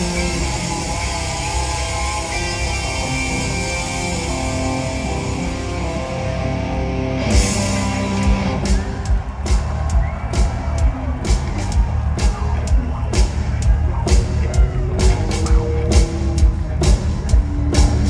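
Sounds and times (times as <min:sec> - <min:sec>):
electric guitar chords: 0:00.0 - 0:09.2
steady drum beat: 0:07.2 - 0:18.0.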